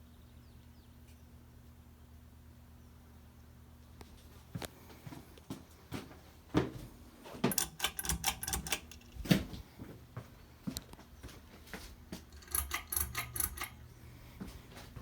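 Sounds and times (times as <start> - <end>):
ceiling fans humming: 0.0 - 15.0
sharp clicks and knocks: 7.4 - 9.6, 12.2 - 13.8.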